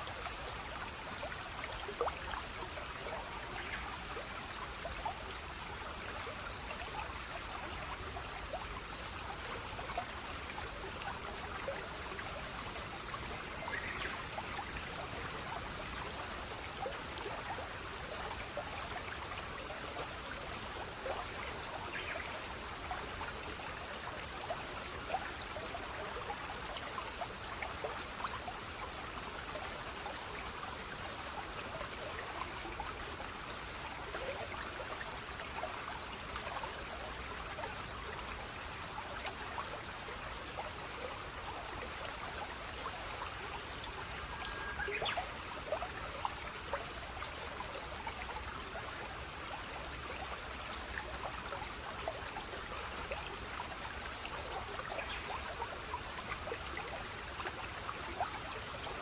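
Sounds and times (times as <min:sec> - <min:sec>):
stream water babbling: 0:00.0 - 0:59.0.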